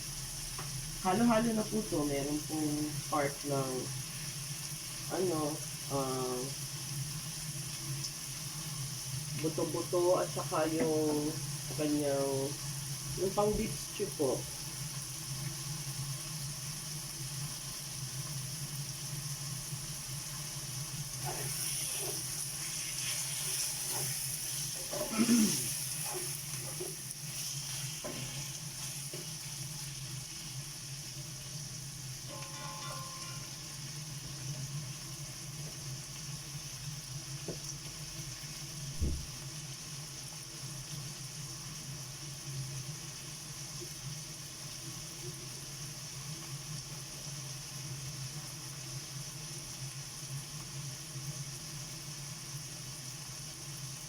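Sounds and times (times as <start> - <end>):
food sizzling in a pan: 0.0 - 54.0
kitchen exhaust fan hum: 0.0 - 54.0
knock: 39.0 - 39.3.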